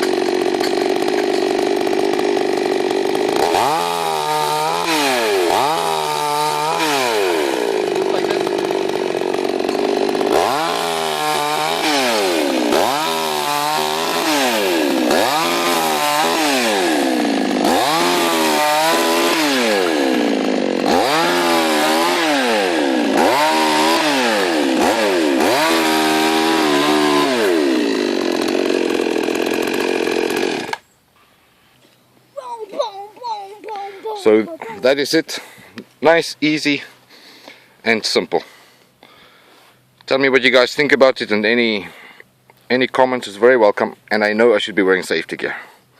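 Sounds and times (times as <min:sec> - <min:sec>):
chainsaw revving and cutting: 0:00.0 - 0:30.8, 0:33.2 - 0:35.5.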